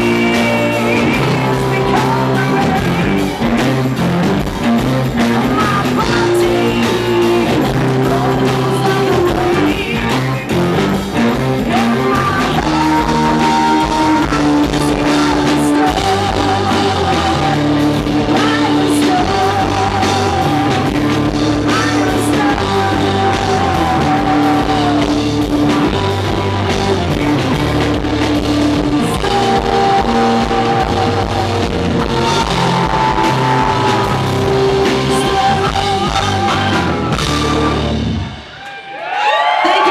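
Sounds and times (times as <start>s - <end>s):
live rock band playing: 0.0s - 39.9s
woman singing with vibrato: 5.2s - 10.2s, 11.4s - 28.1s, 28.8s - 37.9s.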